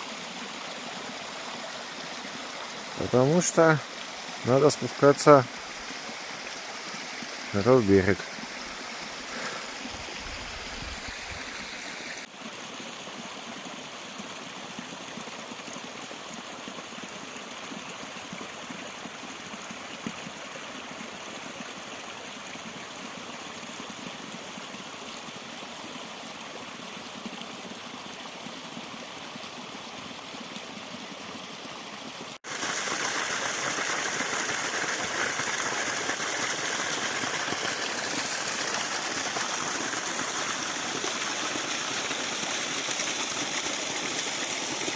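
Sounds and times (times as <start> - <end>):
waterfall rushing: 32.4 - 44.9.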